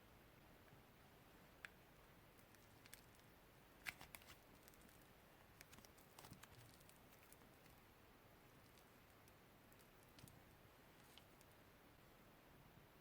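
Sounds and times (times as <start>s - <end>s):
faint sharp clicks and taps: 8.6s - 11.6s.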